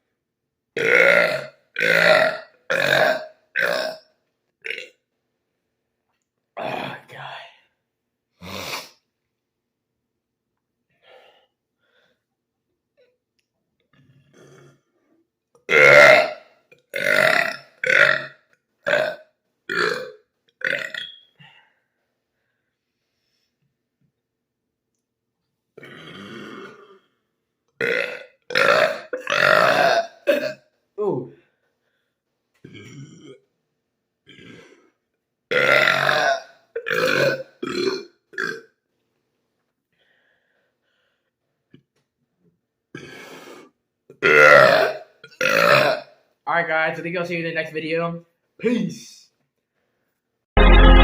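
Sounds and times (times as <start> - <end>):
man burping: 0.8 - 5.0, 6.6 - 7.1, 13.9 - 14.9, 15.7 - 18.3, 18.9 - 21.2, 25.8 - 27.2, 27.8 - 30.6, 32.6 - 33.5, 34.2 - 38.7, 44.1 - 46.1.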